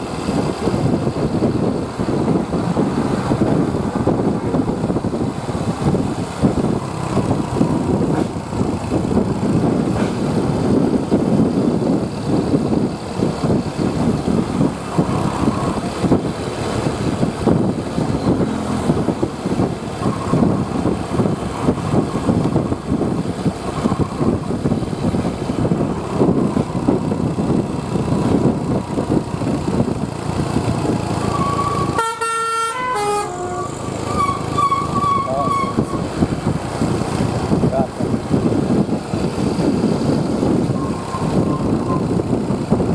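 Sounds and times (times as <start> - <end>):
bus road and engine noise: 0.0 - 42.9
bus horn playing notes: 31.8 - 35.7.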